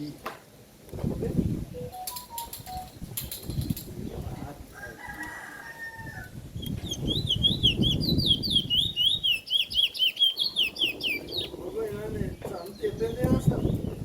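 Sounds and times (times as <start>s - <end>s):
distant rooster crowing: 4.7s - 6.4s
bird singing whistled notes: 6.6s - 11.5s.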